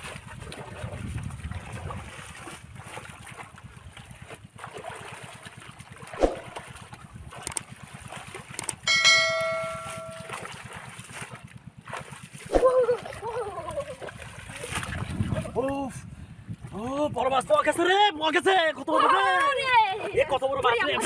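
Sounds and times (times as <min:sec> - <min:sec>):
water sloshing and splashing: 0:00.0 - 0:17.0
bell-like ringing tone: 0:08.8 - 0:10.5.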